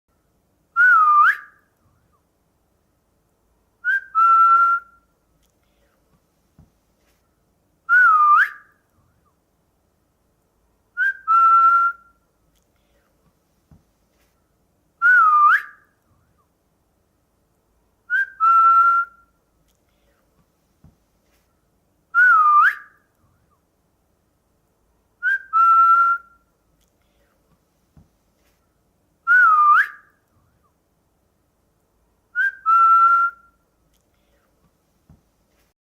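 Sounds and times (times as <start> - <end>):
person whistling: 0.8 - 1.5, 3.8 - 5.0, 7.9 - 8.7, 11.0 - 12.1, 15.0 - 15.8, 18.1 - 19.2, 22.2 - 22.9, 25.2 - 26.3, 29.3 - 30.0, 32.4 - 33.4.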